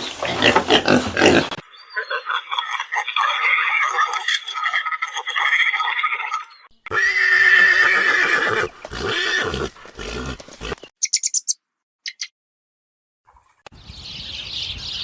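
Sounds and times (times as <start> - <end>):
horse neighing: 6.8 - 10.8.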